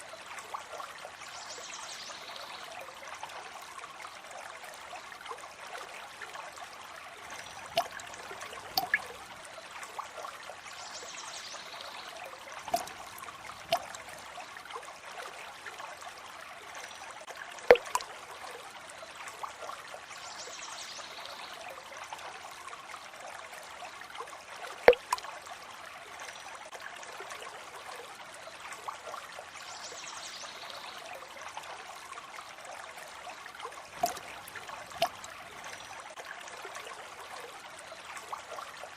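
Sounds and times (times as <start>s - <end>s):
water trickling: 0.0s - 38.9s
sharp water drips: 7.1s - 15.7s, 16.6s - 19.8s, 24.7s - 25.5s, 33.1s - 37.3s.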